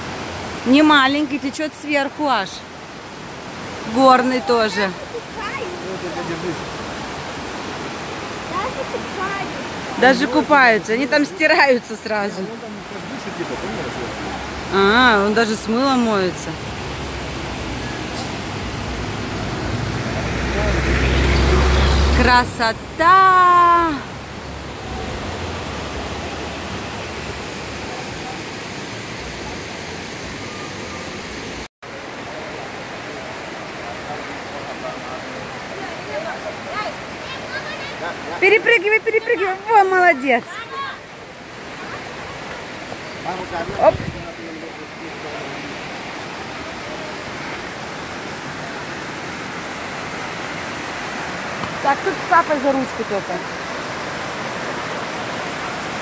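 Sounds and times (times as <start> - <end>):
waterfall roaring: 0.0 - 56.0.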